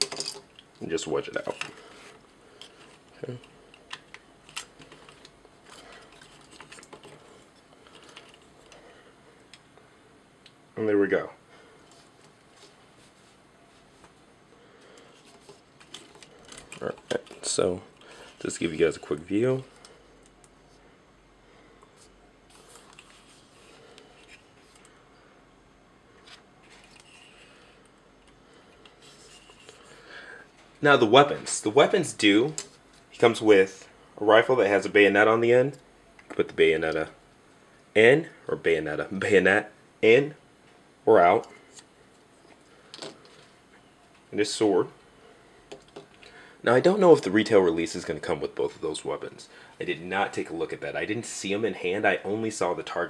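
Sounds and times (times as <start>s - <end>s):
soft rustles of handling: 0.6s - 10.5s, 11.6s - 21.0s, 21.6s - 25.4s, 26.0s - 34.0s.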